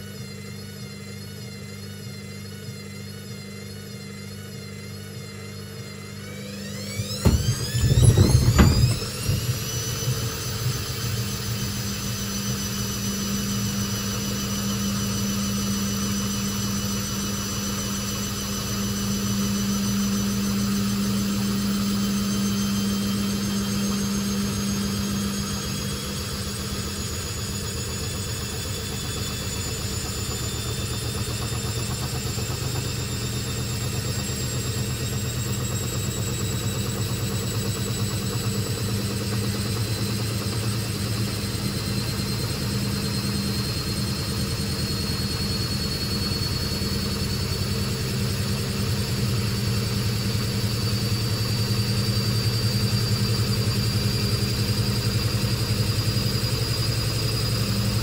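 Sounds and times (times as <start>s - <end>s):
high motor whine: 0.0s - 58.0s
washing machine spinning: 0.0s - 58.0s
drum knocking: 7.2s - 9.6s.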